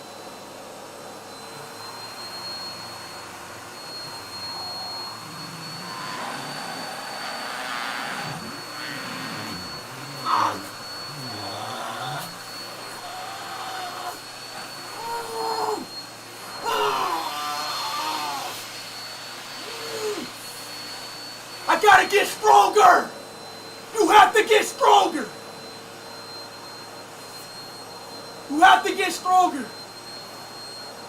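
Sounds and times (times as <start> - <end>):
vacuum cleaner whining: 0.0 - 31.0
person groaning: 5.3 - 12.3, 13.0 - 14.2, 16.6 - 18.5
person crying out: 7.6 - 12.3, 13.0 - 14.2, 14.9 - 15.9, 16.6 - 18.6, 21.7 - 23.1, 24.0 - 25.3, 28.5 - 29.7.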